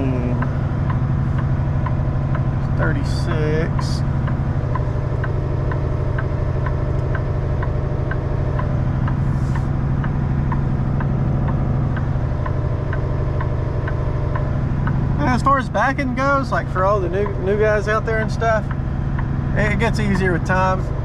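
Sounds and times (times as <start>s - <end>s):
diesel truck engine idling: 0.0s - 21.0s
light ticking: 0.0s - 21.0s.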